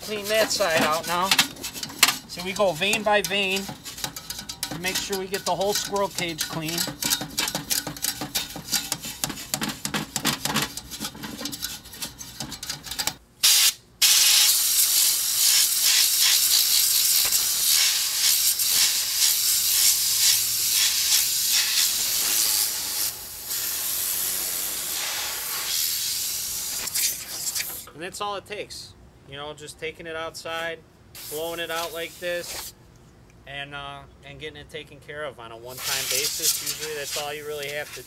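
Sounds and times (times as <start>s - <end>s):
compressed air hissing: 13.4s - 27.8s, 31.2s - 32.7s, 35.7s - 38.0s.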